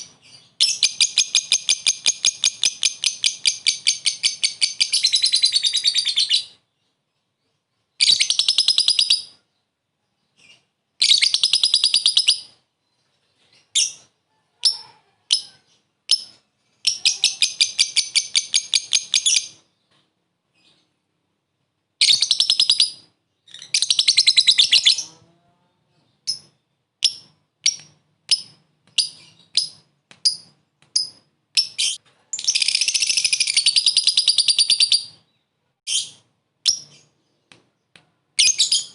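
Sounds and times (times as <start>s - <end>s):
lovebird chattering trill: 0.0s - 6.6s, 14.6s - 19.6s, 26.2s - 35.2s
lovebird sharp chirps: 0.0s - 6.6s, 8.0s - 9.5s, 10.3s - 12.6s, 13.5s - 19.7s, 22.0s - 25.2s, 26.1s - 35.3s, 35.9s - 37.4s, 38.4s - 38.9s.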